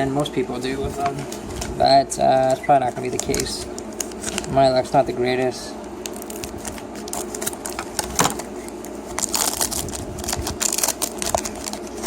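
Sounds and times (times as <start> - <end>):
foil wrapper crinkling and tearing: 3.0 - 5.0, 5.9 - 12.0.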